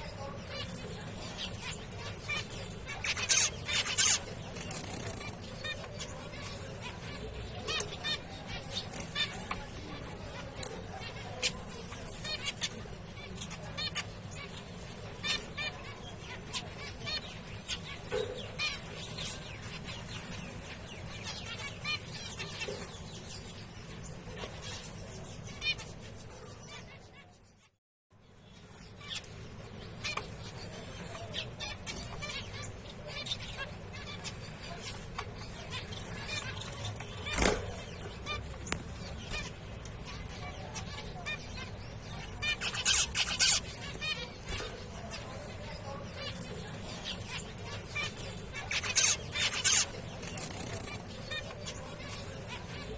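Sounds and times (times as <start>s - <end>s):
finches beeping calls: 0.0s - 9.6s, 30.0s - 52.9s
low background noise: 0.0s - 52.9s.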